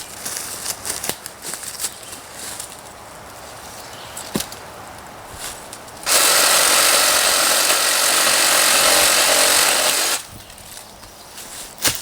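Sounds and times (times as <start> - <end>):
reciprocating saw cutting a tree limb: 6.0 - 10.3.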